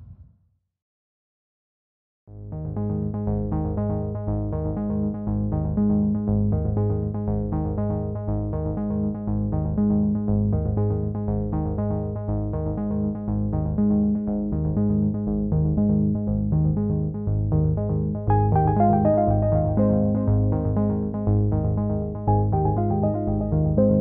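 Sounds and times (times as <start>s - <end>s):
electronic synthesizer music: 18.3s - 24.0s.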